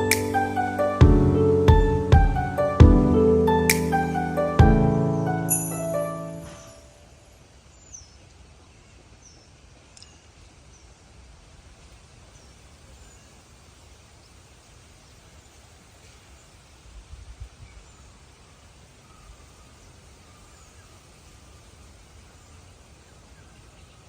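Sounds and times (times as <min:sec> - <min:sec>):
low rumble: 0:01.0 - 0:03.6.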